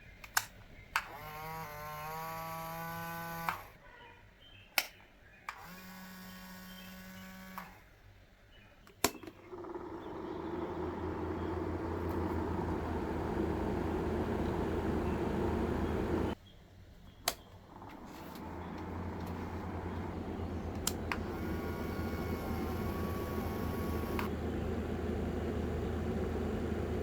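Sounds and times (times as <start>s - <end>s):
small motor whining: 1.0s - 3.8s, 5.6s - 7.8s, 9.4s - 16.4s, 17.7s - 27.0s
loud fan whir: 9.5s - 16.4s, 17.7s - 27.0s.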